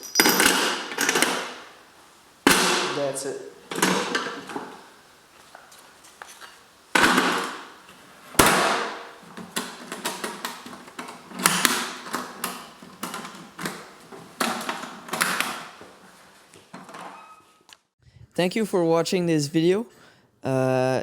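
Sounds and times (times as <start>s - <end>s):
hand tools clunking and rattling: 0.0s - 1.7s, 3.7s - 4.8s, 8.4s - 15.8s.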